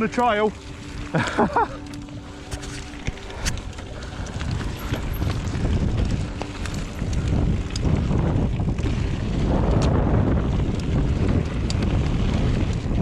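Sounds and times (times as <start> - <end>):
bike clicks and rattles: 0.0 - 13.0
bike tyres rolling over trail: 0.0 - 13.0
wind rushing over microphone: 0.0 - 13.0.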